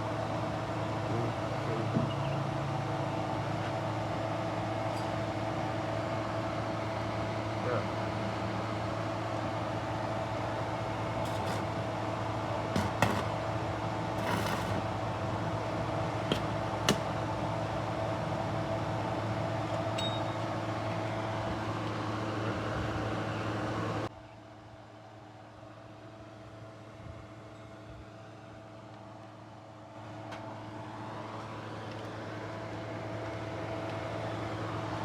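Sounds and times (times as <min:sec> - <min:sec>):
machine hum: 0:00.0 - 0:24.1.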